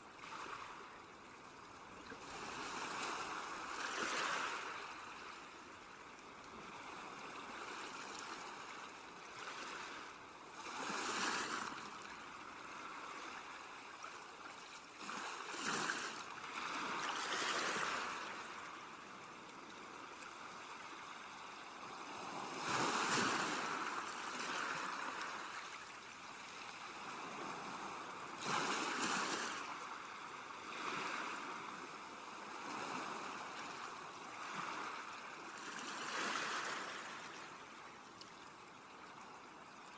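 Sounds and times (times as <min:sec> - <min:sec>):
sea waves washing onto shore: 0:19.9 - 0:37.8.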